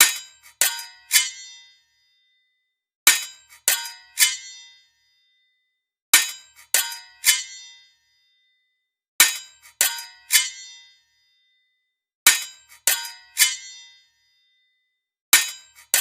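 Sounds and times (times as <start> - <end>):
sword blades clashing: 0.0 - 1.7, 3.1 - 4.8, 6.1 - 7.8, 9.2 - 10.9, 12.3 - 14.0, 15.3 - 16.0.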